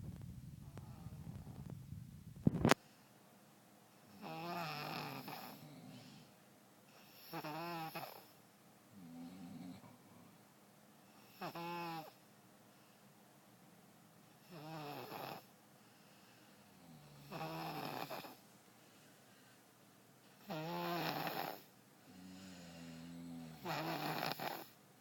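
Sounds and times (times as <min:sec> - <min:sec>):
baby snoring: 0:04.1 - 0:06.1, 0:07.0 - 0:08.4, 0:11.2 - 0:12.2, 0:14.4 - 0:15.5, 0:16.9 - 0:18.4, 0:20.4 - 0:24.8.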